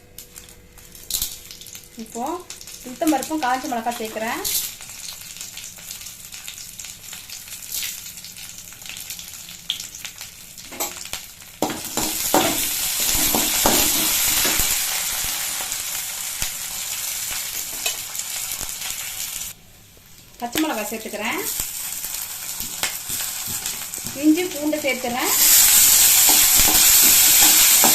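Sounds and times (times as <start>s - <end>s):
food sizzling in hot oil: 0.4s - 27.9s
spoon scraping a pan: 25.3s - 27.9s.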